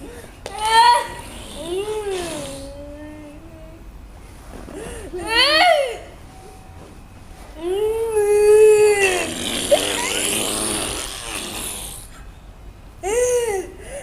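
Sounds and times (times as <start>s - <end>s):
breathy noise: 0.0s - 3.8s, 4.4s - 5.3s, 7.5s - 12.3s.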